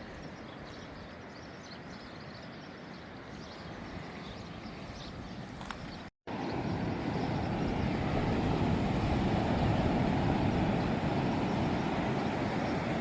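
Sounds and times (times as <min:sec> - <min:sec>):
ocean surf breaking on a beach: 0:06.3 - 0:13.0.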